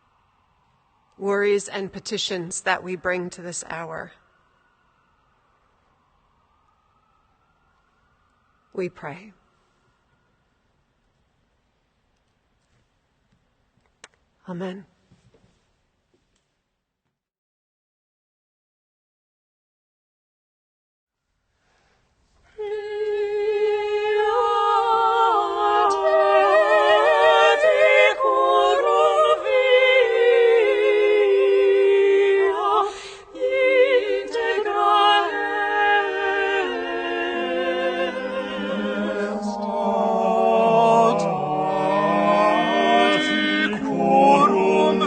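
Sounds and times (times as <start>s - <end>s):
lower vocal part: 22.5s - 45.0s
person singing with vibrato: 22.5s - 45.0s.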